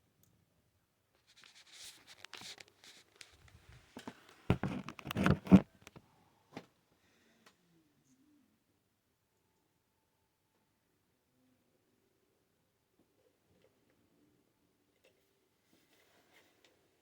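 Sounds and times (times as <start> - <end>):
hands scraping and rustling plastic: 1.2 - 6.0.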